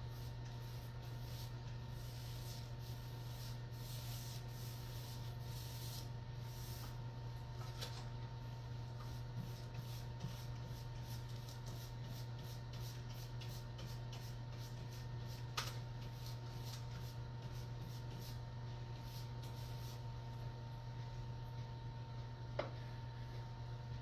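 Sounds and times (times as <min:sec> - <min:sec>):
paint strokes on wall: 0:00.0 - 0:07.1, 0:08.8 - 0:20.1
steady low hum: 0:00.0 - 0:24.0.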